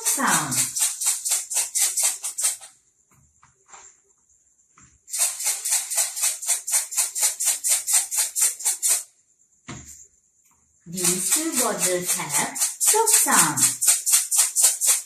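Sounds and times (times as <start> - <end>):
bottle rattling when shaken: 5.1 - 9.1, 10.9 - 15.0.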